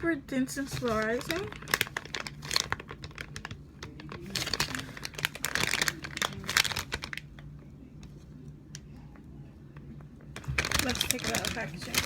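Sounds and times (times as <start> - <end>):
plastic packaging crinkling: 0.0 - 7.6, 10.3 - 12.0.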